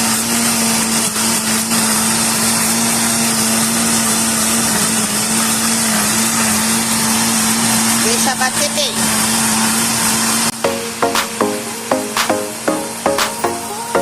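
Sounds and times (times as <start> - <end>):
blender running: 0.0 - 10.6.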